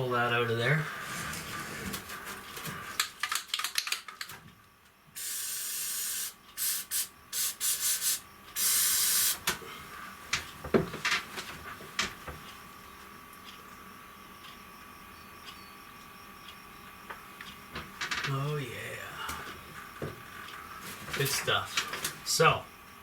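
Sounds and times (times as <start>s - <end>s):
scraping and rustling of handling: 1.0s - 3.0s, 19.3s - 22.3s
aerosol spray can hissing: 5.2s - 9.5s.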